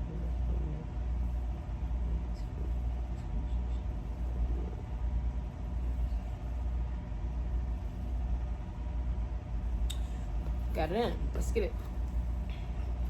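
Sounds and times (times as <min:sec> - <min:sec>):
faint hum: 0:00.0 - 0:13.0
steady low rumble: 0:00.0 - 0:13.0.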